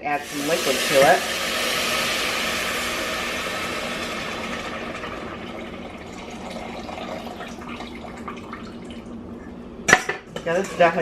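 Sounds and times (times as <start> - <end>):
liquid sizzling in hot pan: 0.0 - 7.3.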